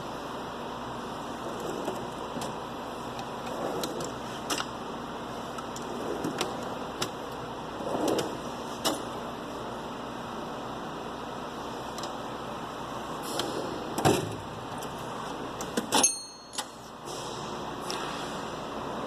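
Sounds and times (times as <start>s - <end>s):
metal drawers sliding: 1.2s - 2.6s, 3.2s - 4.8s, 5.6s - 9.3s, 13.1s - 15.0s
drawers clacking shut: 1.4s - 2.6s, 3.4s - 4.7s, 5.8s - 7.2s, 7.8s - 9.2s, 13.3s - 14.5s
tools shifting inside drawer: 3.2s - 4.7s, 5.6s - 7.2s, 7.8s - 9.1s.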